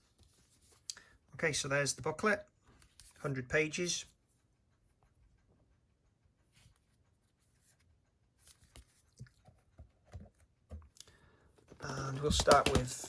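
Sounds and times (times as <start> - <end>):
cardboard and plastic cases rustling: 11.6 - 13.0.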